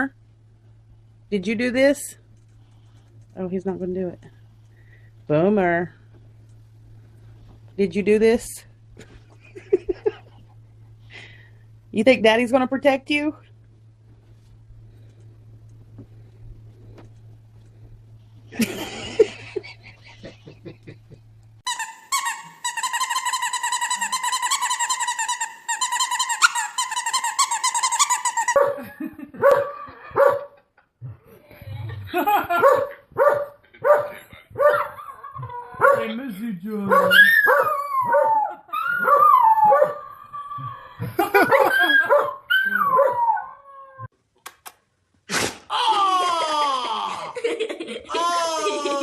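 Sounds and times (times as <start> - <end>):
low hum: 0.0 - 21.7
dog yelping: 29.4 - 30.5, 32.6 - 36.1, 36.9 - 44.1
dog howling and whining: 34.6 - 36.1, 36.9 - 44.1.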